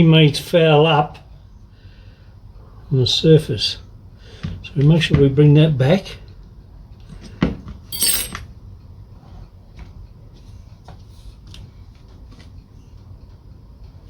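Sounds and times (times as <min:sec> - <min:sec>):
metallic clink and rattle: 0:07.9 - 0:08.4.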